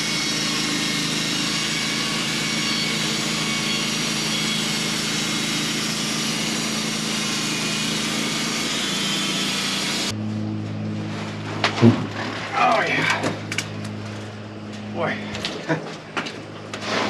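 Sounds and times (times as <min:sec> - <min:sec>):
saw blade cutting log: 0:00.0 - 0:10.1
sawmill engine hum: 0:00.0 - 0:17.0.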